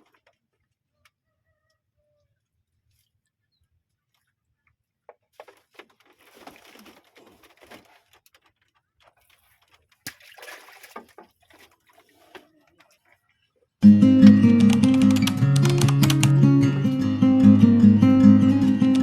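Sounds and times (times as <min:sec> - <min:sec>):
acoustic guitar music: 0:13.8 - 0:19.0.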